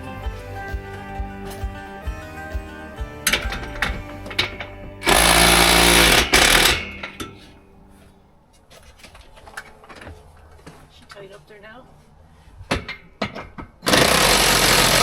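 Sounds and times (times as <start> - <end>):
guitar background music: 0.0 - 7.9
power drill driving a fastener: 3.3 - 7.2, 13.8 - 15.0
handling clicks and knocks: 3.3 - 7.6.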